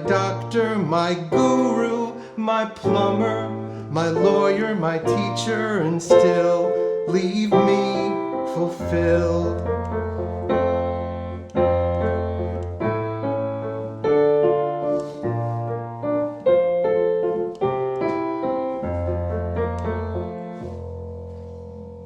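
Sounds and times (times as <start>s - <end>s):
solo piano chords: 0.0s - 22.0s.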